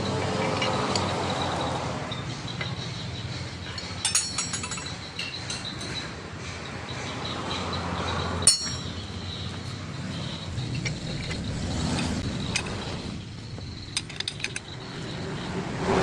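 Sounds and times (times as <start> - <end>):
metal tools clinking: 0.4 - 1.2, 3.6 - 6.1, 8.4 - 15.0
sharp ringing metal clank: 3.7 - 6.0, 8.4 - 9.1.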